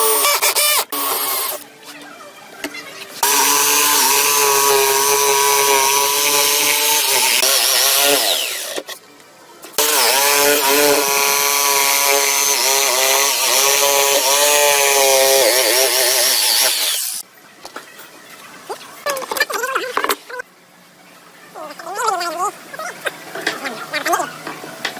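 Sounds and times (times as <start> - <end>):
power tool cutting wood: 0.0 - 1.6, 3.2 - 8.8, 9.8 - 17.2.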